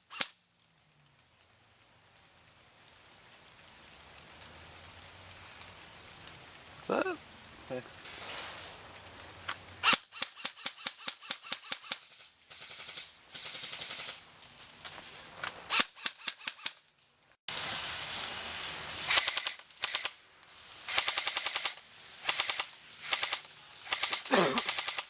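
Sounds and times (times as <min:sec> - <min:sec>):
airsoft guns firing bursts: 0:09.8 - 0:14.2, 0:19.1 - 0:20.2, 0:20.9 - 0:25.0.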